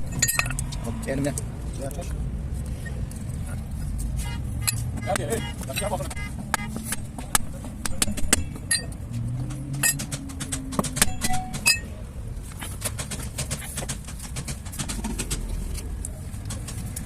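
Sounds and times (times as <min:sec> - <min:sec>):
metal tools clinking on car parts: 0:00.0 - 0:01.4, 0:04.6 - 0:06.3, 0:08.0 - 0:12.1.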